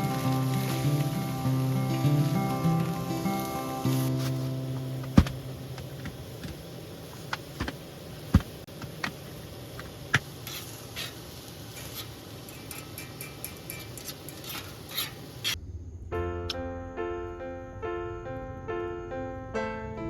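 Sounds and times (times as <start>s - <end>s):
campfire crackling: 0.0s - 15.6s.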